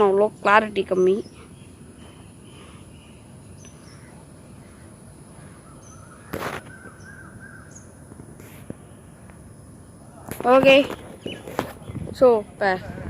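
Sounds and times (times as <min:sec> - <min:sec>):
faint bird chirps: 0:00.0 - 0:08.1, 0:09.8 - 0:12.1.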